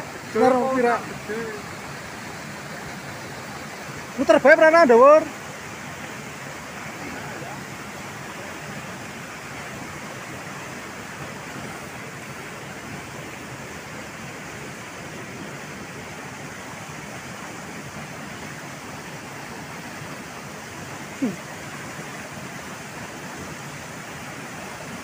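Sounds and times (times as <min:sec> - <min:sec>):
waterfall and rushing river: 0:00.0 - 0:25.0.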